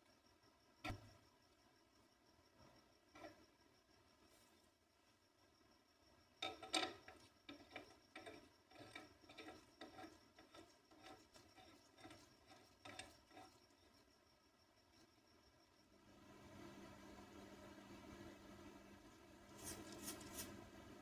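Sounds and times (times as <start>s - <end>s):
faint rubbing and scraping: 3.1s - 3.6s, 6.4s - 14.2s, 19.5s - 20.6s.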